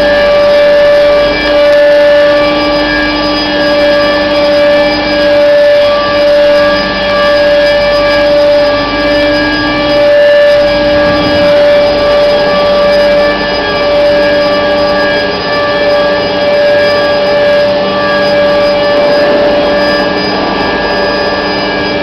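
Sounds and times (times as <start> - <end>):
pipe bending machine whining: 8.8 - 14.7.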